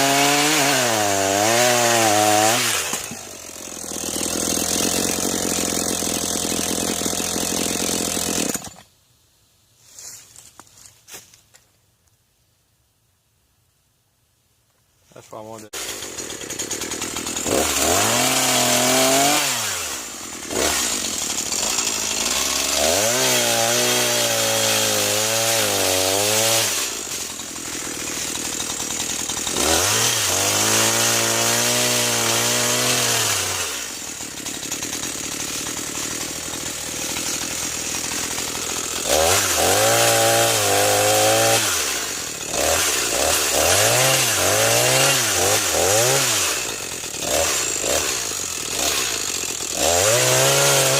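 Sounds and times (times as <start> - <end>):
chainsaw revving and idling: 0.0 - 8.9, 15.2 - 50.9.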